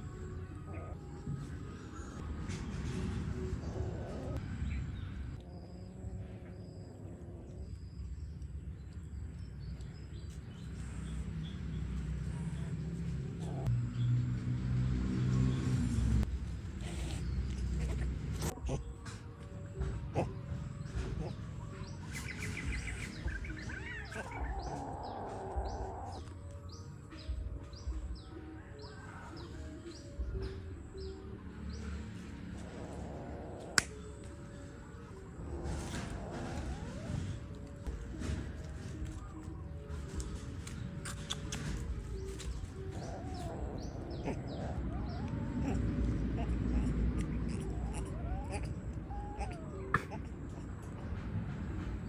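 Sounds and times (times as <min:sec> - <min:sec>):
animal squeaks and chirps: 0:20.2 - 0:26.3, 0:40.0 - 0:51.2.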